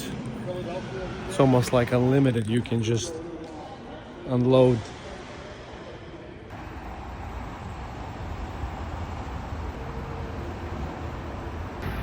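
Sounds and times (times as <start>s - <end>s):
road noise: 0.0s - 3.2s, 4.9s - 12.0s
vehicle engine rumble: 6.5s - 12.0s.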